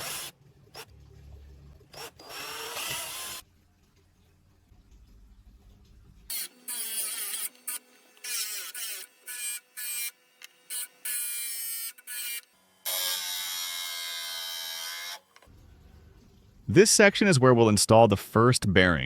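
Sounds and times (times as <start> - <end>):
electric drill boring holes: 0.0 - 0.9, 1.9 - 3.4, 6.3 - 15.5.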